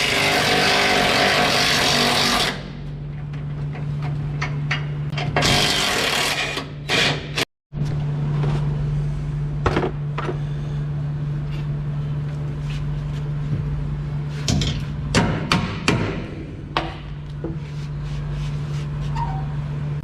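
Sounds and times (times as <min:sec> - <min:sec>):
low machine hum: 0:07.8 - 0:20.0.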